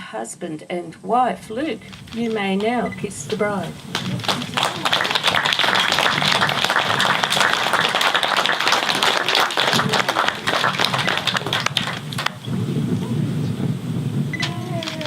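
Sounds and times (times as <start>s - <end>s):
crowd applauding: 2.0s - 12.5s.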